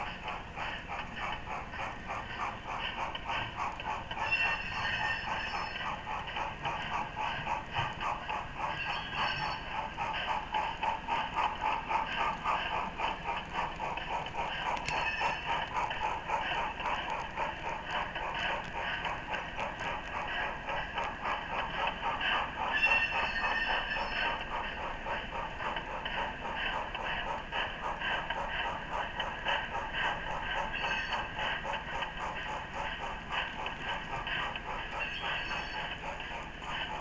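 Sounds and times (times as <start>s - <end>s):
model train clicking: 0.0s - 37.0s.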